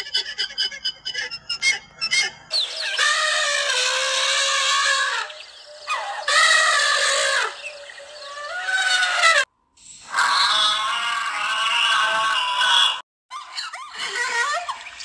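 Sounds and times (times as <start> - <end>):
animal long drawn-out cries: 2.9 - 14.8.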